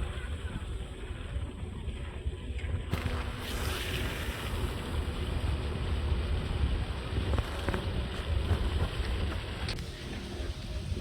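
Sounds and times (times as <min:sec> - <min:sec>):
wind rumble on microphone: 0:00.0 - 0:11.0
water gurgling and washing: 0:02.9 - 0:11.0.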